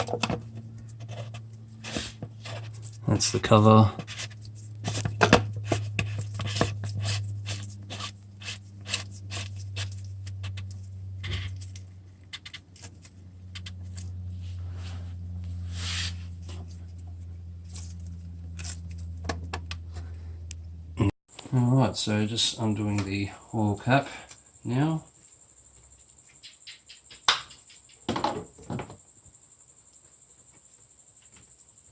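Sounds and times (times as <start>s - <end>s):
steady low hum: 0.0s - 31.9s
clicks and scrapes of hand work: 4.0s - 14.1s.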